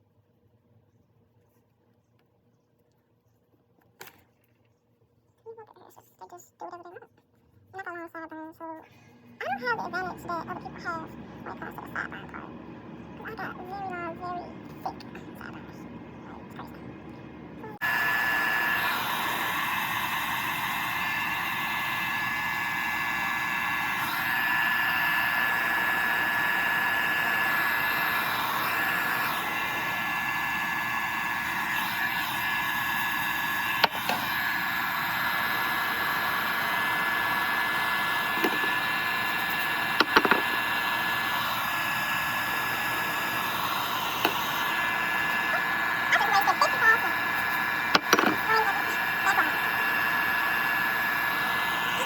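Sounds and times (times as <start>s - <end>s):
hair dryer running: 9.2s - 52.0s.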